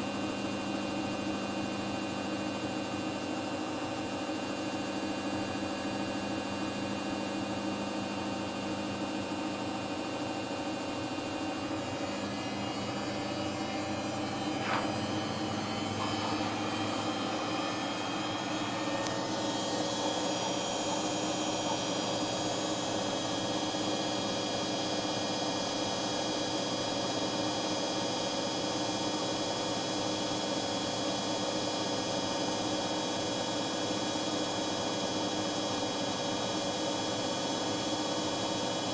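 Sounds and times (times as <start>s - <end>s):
washing machine spinning: 0.0s - 38.9s
higher whine: 11.8s - 21.7s.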